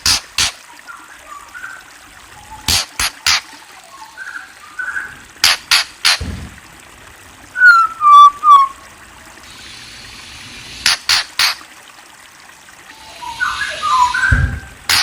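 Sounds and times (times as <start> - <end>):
sharp clicks: 2.7 - 3.5, 5.4 - 6.2, 10.8 - 11.6
songbird whistling falling notes: 7.6 - 8.8, 13.0 - 15.0.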